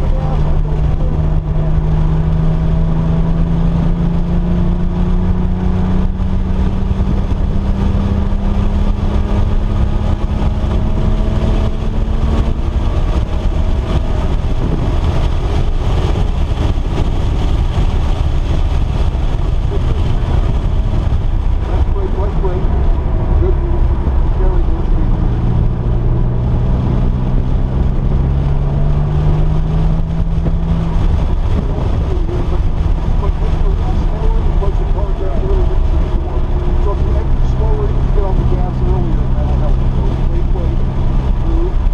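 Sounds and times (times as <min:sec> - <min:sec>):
car engine running hard: 0:00.0 - 0:41.9
wind and road noise rumble: 0:00.0 - 0:41.9.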